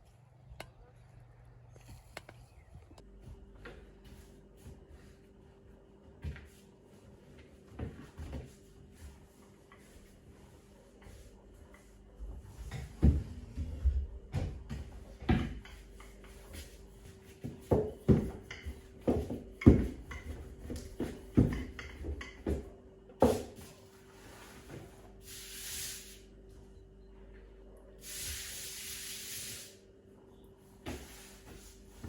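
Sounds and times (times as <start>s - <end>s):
irregular knocks and thumps: 17.4s - 23.4s.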